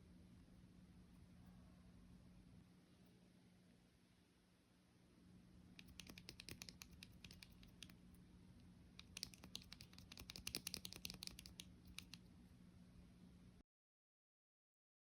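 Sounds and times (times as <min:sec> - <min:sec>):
typing on keyboard: 0:05.8 - 0:08.0, 0:09.0 - 0:12.2.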